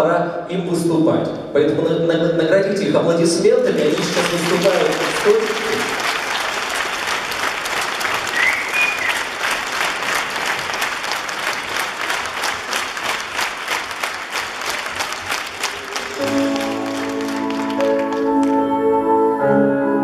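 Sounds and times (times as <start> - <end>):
audience applauding: 3.6 - 18.6
music: 15.6 - 20.0.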